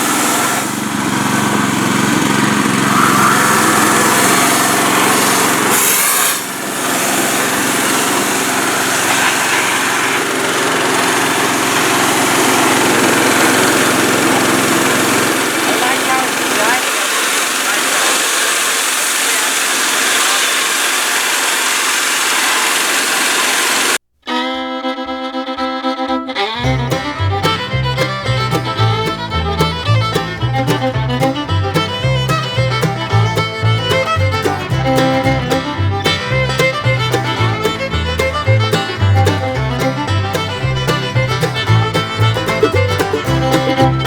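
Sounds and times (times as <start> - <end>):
bluegrass fiddle music: 0.0 - 19.8, 24.2 - 44.0
rushing machine noise: 0.0 - 24.0, 26.8 - 44.0
rhythmic bass line: 26.6 - 44.0.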